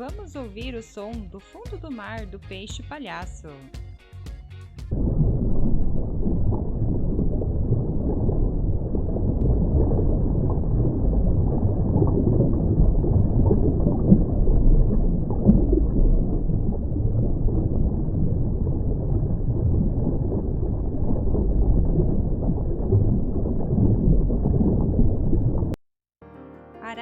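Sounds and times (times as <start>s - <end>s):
underwater water rumble: 4.8s - 25.8s
small bubbling blips: 5.0s - 25.8s.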